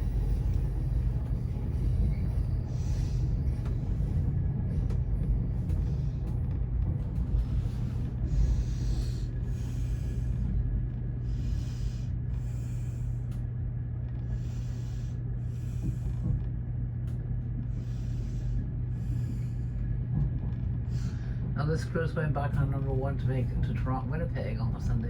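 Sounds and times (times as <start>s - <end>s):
heavy breathing: 0.0s - 13.4s, 14.2s - 16.5s, 17.6s - 20.0s, 20.9s - 21.6s
train rumble inside cabin: 0.0s - 25.0s.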